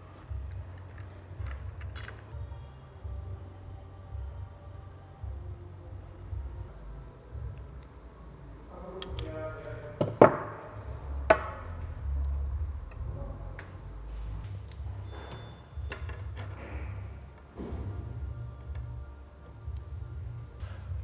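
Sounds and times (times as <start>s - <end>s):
low steady hum: 0.0s - 21.0s
metal tubing and tools clinking: 14.7s - 16.8s.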